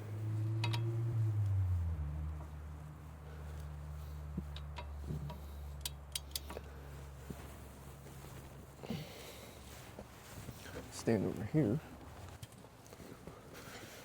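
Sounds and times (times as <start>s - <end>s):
steady low hum: 0.0s - 14.0s
metallic clicks and clinks: 5.8s - 6.7s.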